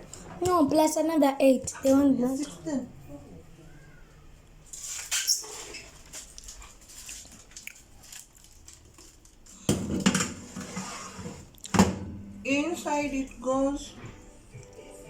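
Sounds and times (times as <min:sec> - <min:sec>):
clatter on baking tray: 0:09.7 - 0:11.4
granola scraping and rustling on tray: 0:10.4 - 0:11.5.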